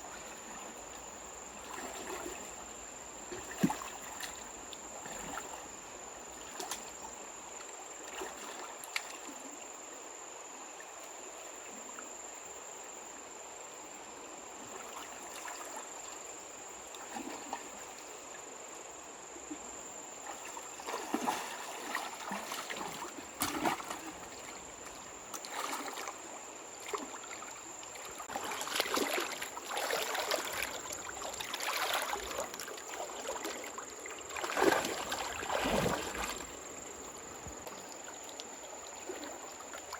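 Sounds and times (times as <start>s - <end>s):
splashing in shallow water: 1.5s - 7.1s, 8.0s - 9.5s, 14.7s - 16.1s, 16.9s - 18.1s, 20.2s - 39.9s
water trickling: 20.7s - 39.9s.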